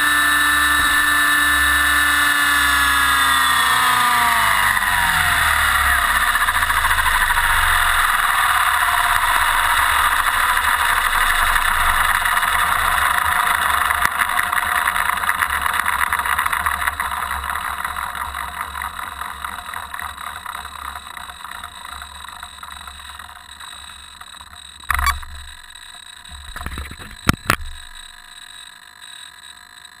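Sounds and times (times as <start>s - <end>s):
model helicopter rotor whirring: 0.0s - 30.0s
sharp knocks: 24.9s - 28.2s.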